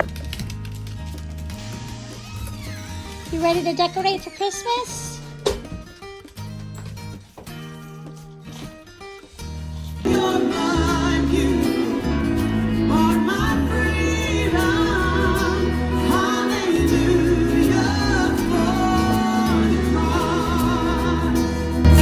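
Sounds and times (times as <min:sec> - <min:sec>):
steady bass line: 0:00.0 - 0:00.3, 0:09.9 - 0:22.0
person singing with vibrato: 0:10.0 - 0:22.0.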